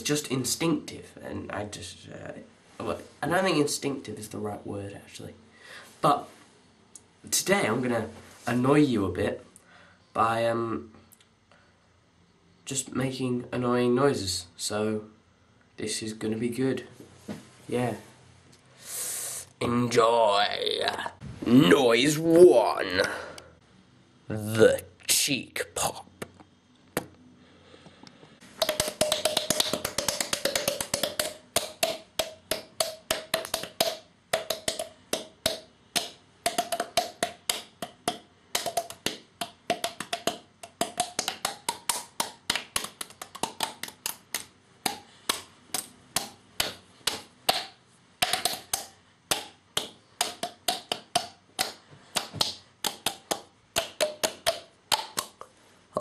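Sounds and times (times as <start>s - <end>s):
cheek pops made with mouth: 28.6s - 55.5s.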